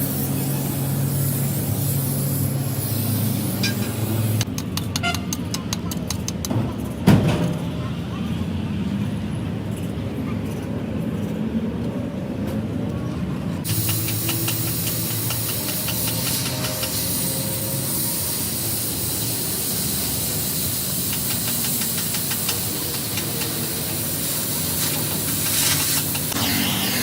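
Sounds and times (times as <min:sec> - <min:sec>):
loud steady hiss: 0:00.0 - 0:04.5, 0:13.6 - 0:27.0.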